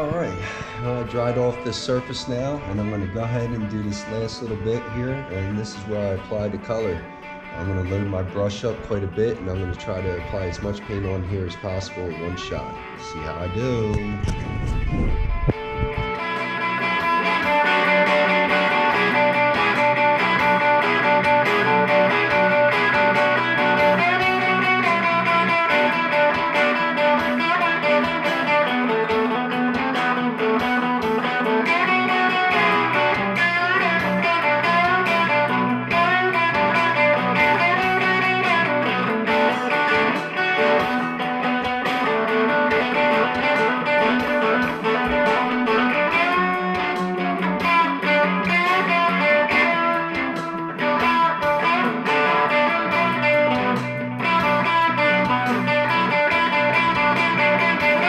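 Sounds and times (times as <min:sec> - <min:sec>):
electric guitar instrumental: 0:00.0 - 0:58.0
low bass line: 0:12.7 - 0:16.2.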